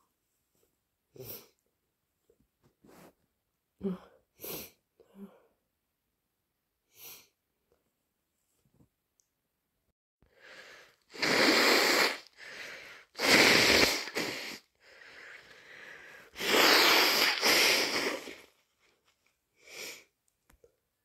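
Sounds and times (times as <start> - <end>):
person sniffing: 10.4 - 18.5, 19.6 - 20.1
person blowing nose: 10.4 - 18.6.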